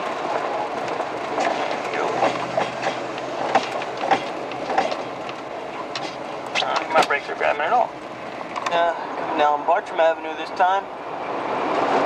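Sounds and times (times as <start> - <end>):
road noise rumble in car: 0.0 - 12.0
irregular clicks and knocks: 0.8 - 7.2.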